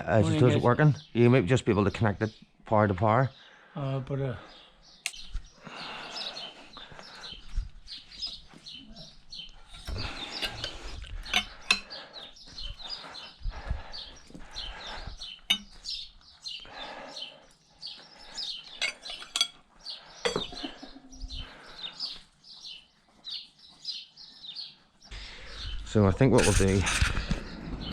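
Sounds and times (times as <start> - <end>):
small birds chirping: 0.0 - 27.9
metal tools clinking: 9.7 - 11.9, 15.5 - 15.8, 18.7 - 19.6.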